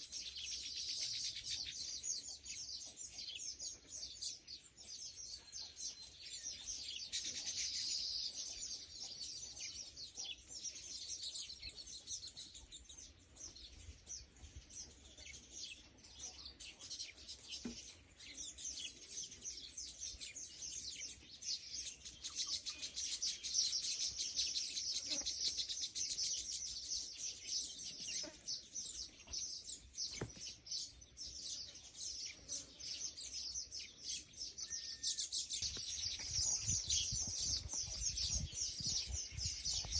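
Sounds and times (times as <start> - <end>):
small birds chirping: 0.0 - 39.9.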